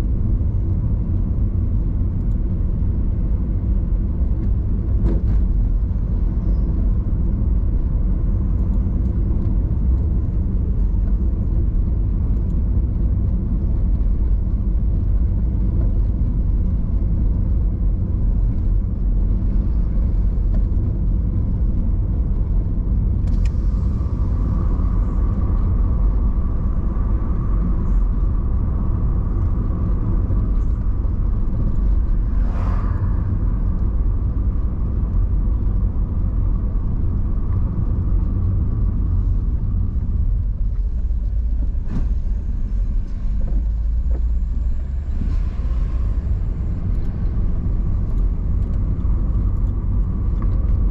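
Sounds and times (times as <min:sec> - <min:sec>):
car driving on road: 0:00.0 - 0:50.9
steady higher hum: 0:23.3 - 0:37.3.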